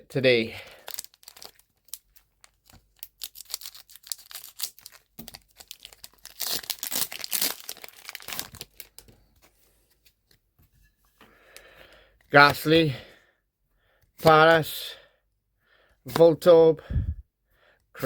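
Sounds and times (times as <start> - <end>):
foil pack crinkling and tearing: 0.6 - 9.1.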